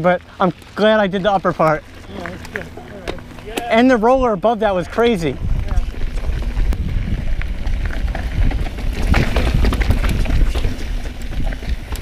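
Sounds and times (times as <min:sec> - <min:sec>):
bike rattling clicks and knocks: 0:00.0 - 0:12.0
bike tyres rumbling on dirt: 0:00.0 - 0:12.0
wind on microphone: 0:05.2 - 0:12.0.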